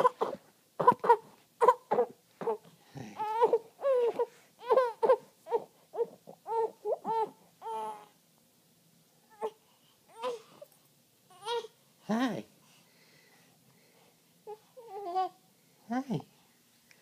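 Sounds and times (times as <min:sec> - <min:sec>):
baby whimpering cries: 0:00.0 - 0:08.2, 0:09.3 - 0:10.6, 0:11.3 - 0:11.8, 0:14.4 - 0:15.4.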